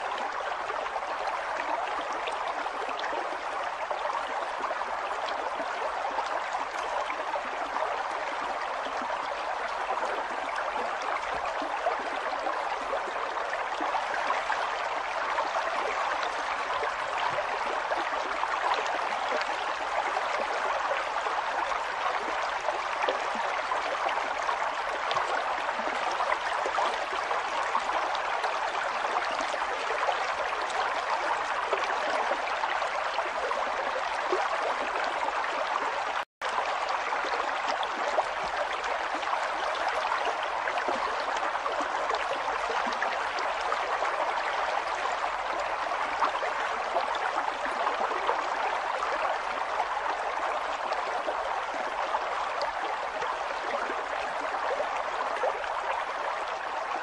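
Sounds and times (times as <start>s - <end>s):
river water flowing over rocks: 0.0s - 57.0s.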